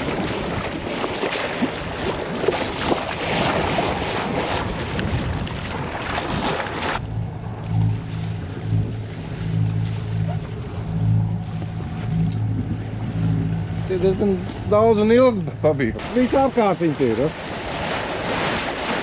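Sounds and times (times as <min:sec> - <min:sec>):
low motor hum: 0:00.0 - 0:19.0
wind and water rushing: 0:00.0 - 0:19.0.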